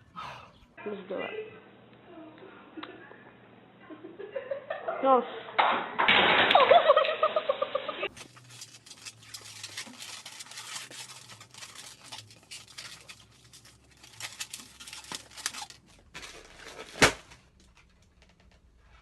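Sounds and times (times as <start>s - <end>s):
scratchy rustling and tearing: 8.1s - 17.9s.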